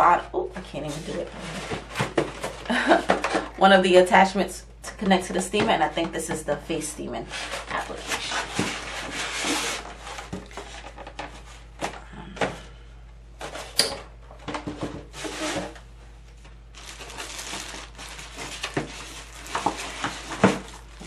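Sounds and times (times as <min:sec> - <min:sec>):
packaging rustling: 0:07.3 - 0:11.8, 0:14.8 - 0:21.0.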